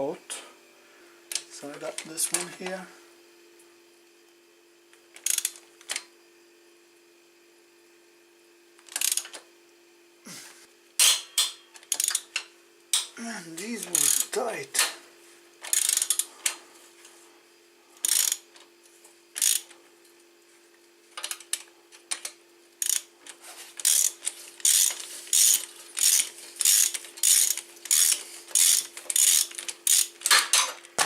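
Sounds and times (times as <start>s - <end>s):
ratchet wrench clicking: 5.2s - 5.6s, 8.8s - 9.4s, 11.8s - 12.4s, 13.8s - 14.4s, 15.6s - 16.3s, 18.0s - 18.4s, 19.4s - 19.8s, 22.8s - 23.1s, 23.8s - 30.4s.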